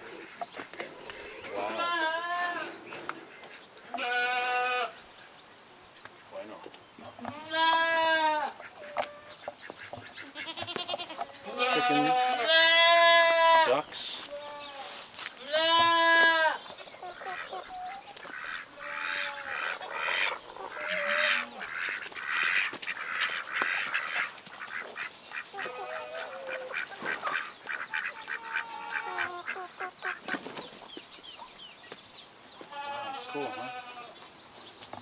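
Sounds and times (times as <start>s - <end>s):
ducks quacking: 7.2s - 30.4s.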